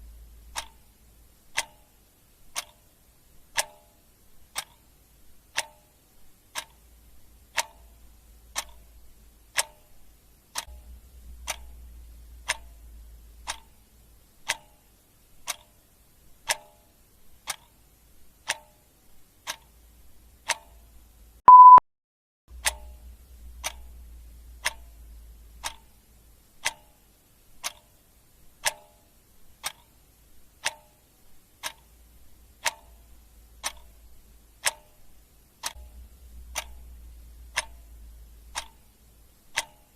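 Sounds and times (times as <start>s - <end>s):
clock ticking: 0.0s - 21.8s, 22.5s - 39.9s
short loud beep: 21.5s - 21.8s.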